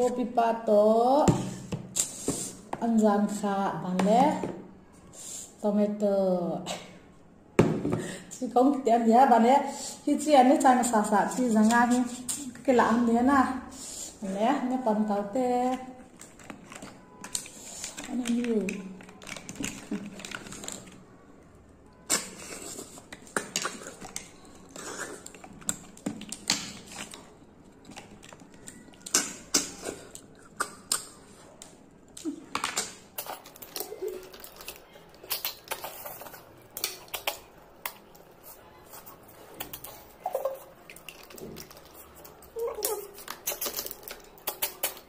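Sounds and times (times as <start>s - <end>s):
chewing and crunching: 16.0s - 21.2s, 21.9s - 32.3s, 33.0s - 45.0s
mouth smacks and clicks: 29.0s - 38.1s, 39.5s - 45.0s.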